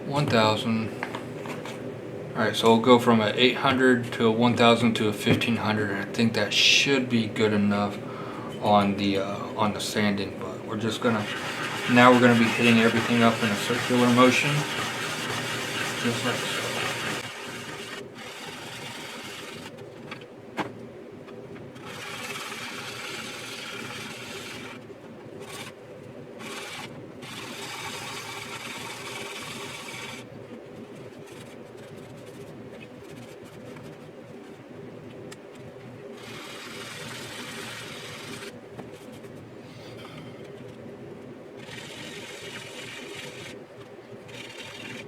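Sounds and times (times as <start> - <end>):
faint steady hum: 0.0 - 45.0
sanding sponge rubbing on plastic: 10.9 - 19.4, 30.8 - 34.6.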